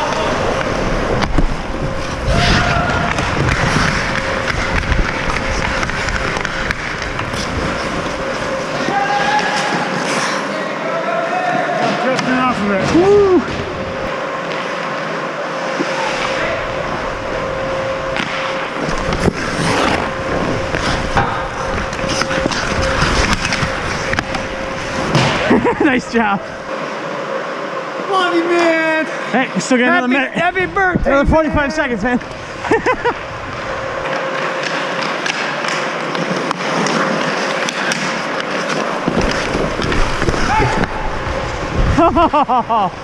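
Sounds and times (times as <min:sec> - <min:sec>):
skate blades scraping ice: 0:00.0 - 0:10.7, 0:14.4 - 0:25.7, 0:32.2 - 0:43.0.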